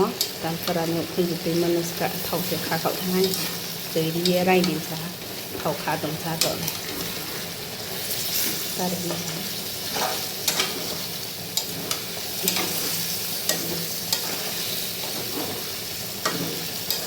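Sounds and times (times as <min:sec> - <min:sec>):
food sizzling in a pan: 0:00.0 - 0:17.0
utensil clicking against pan: 0:00.2 - 0:00.8, 0:05.6 - 0:07.2, 0:09.1 - 0:17.0.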